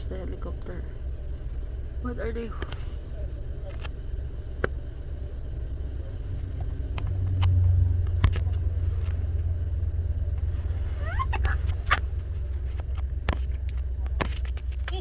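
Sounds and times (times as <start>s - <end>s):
vehicle rumble: 0.0s - 15.0s.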